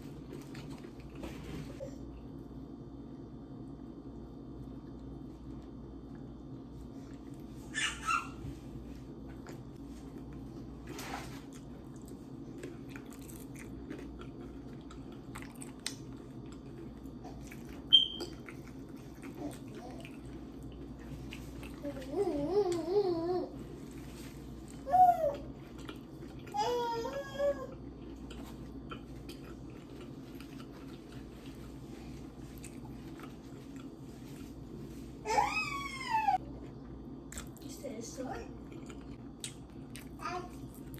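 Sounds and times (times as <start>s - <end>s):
steady low hum: 0.0s - 40.9s
chewing and biting food: 9.2s - 22.1s, 25.4s - 26.6s, 27.7s - 34.7s, 36.6s - 37.6s, 38.6s - 40.9s.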